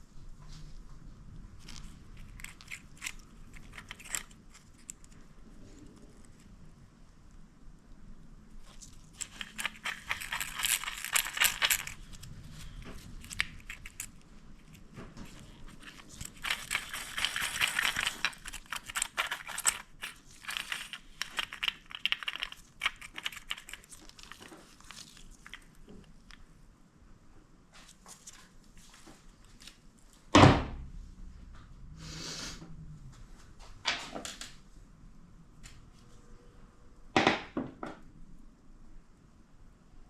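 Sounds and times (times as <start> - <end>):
small metal parts clinking: 1.7 - 5.2, 8.6 - 25.7.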